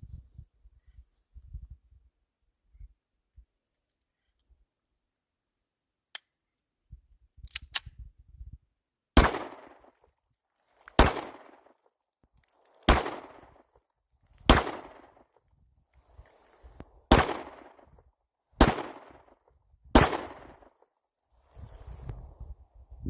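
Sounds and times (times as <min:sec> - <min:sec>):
handgun shots with echo: 0:09.2 - 0:09.9, 0:12.9 - 0:13.4, 0:14.5 - 0:15.2, 0:17.1 - 0:17.8, 0:20.0 - 0:20.7.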